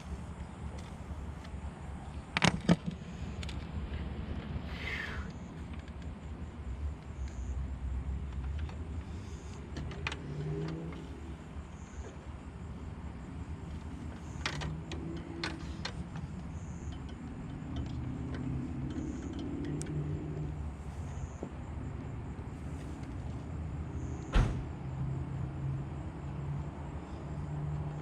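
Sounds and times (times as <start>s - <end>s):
clicks and taps of parts: 13.7s - 20.5s.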